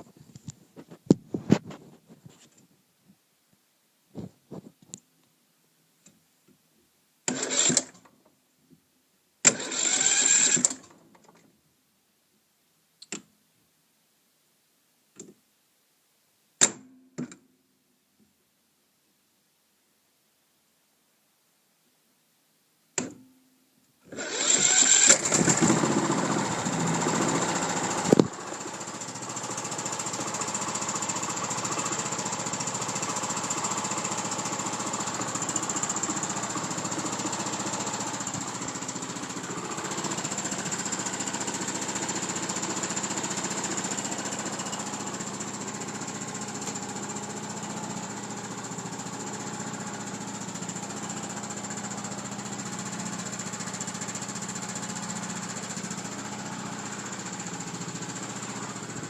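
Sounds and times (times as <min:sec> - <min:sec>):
mower engine running: 0:07.3 - 0:07.9, 0:09.5 - 0:10.8, 0:24.1 - 0:59.0
starter cranking: 0:07.3 - 0:08.0, 0:09.5 - 0:10.9, 0:24.1 - 0:59.0.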